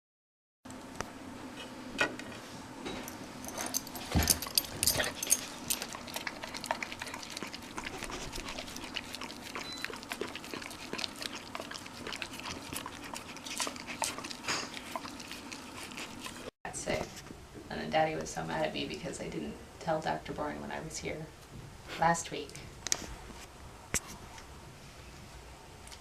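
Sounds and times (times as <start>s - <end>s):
dog claws clicking and rustling: 3.4s - 16.4s.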